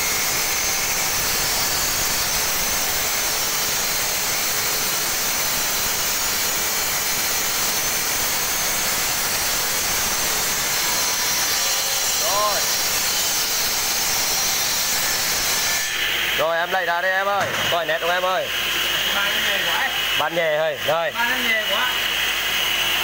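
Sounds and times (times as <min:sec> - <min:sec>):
saw blade cutting stone: 0:00.0 - 0:16.9.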